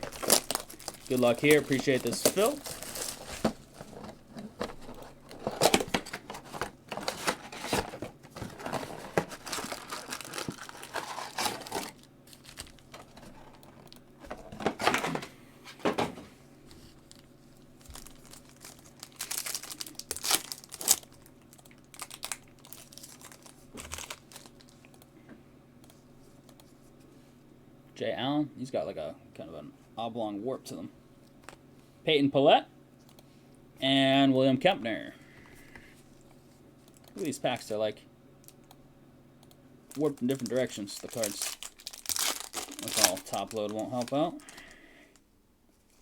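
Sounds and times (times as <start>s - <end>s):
card pack wrappers tearing: 0.0s - 15.1s, 17.0s - 24.8s, 39.9s - 44.8s.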